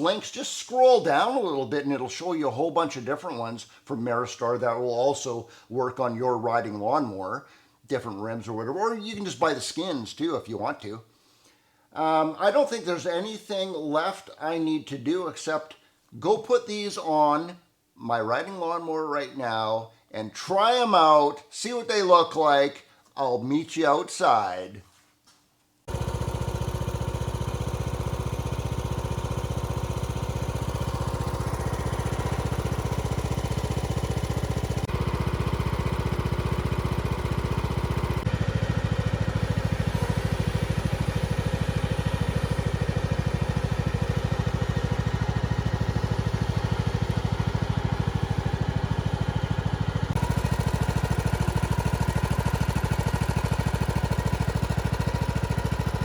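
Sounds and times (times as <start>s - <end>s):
riding lawnmower engine running: 25.9s - 56.0s.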